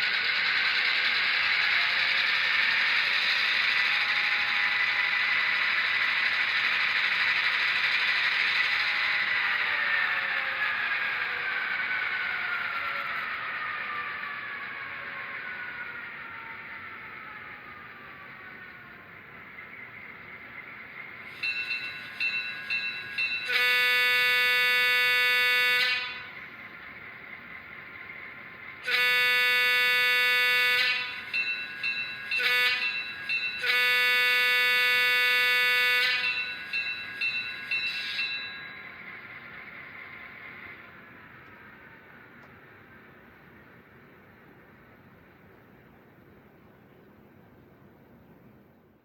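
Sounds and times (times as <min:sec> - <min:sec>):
model locomotive motor whirring: 0:00.0 - 0:13.4, 0:21.3 - 0:43.7
horn blast: 0:23.5 - 0:26.3, 0:28.8 - 0:31.2, 0:32.4 - 0:33.0, 0:33.6 - 0:36.4
short ringing tones: 0:30.8 - 0:39.6.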